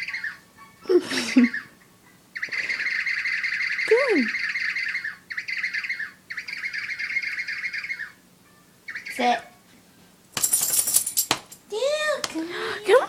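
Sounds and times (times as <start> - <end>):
bird squawking: 0.0 - 0.4, 1.3 - 1.8, 2.4 - 8.2, 8.9 - 9.6.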